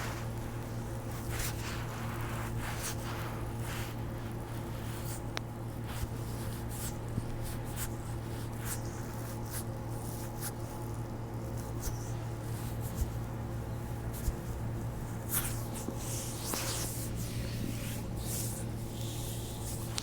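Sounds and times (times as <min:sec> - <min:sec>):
steady low hum: 0:00.0 - 0:20.0
hands rubbing skin: 0:15.2 - 0:20.0.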